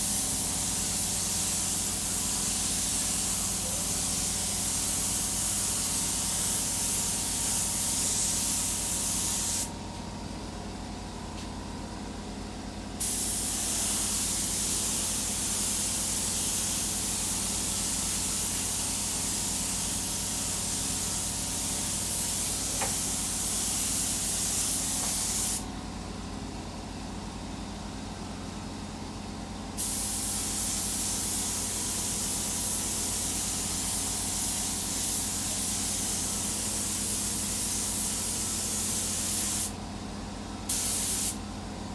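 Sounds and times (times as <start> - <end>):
spray gun hissing: 0.0 - 9.7, 13.0 - 25.6, 29.8 - 39.8, 40.7 - 41.4.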